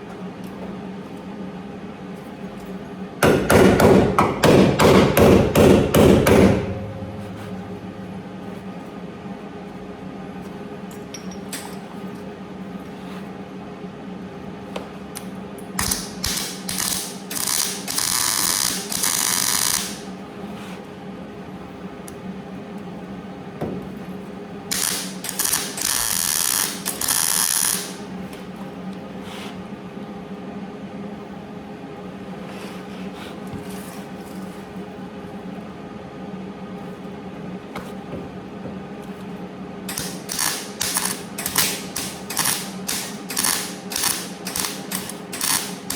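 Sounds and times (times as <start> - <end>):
steady low hum: 0.0 - 45.9
crackling metalworking bursts: 15.8 - 20.1, 24.7 - 28.0, 39.9 - 45.9.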